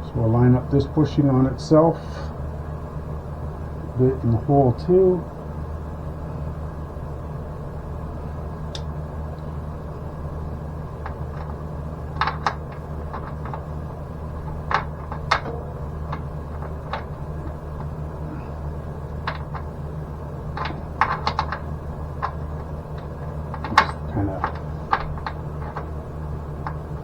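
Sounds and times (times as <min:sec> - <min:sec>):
steady low hum: 0:00.0 - 0:27.0
small metal hardware clicking: 0:20.6 - 0:25.9.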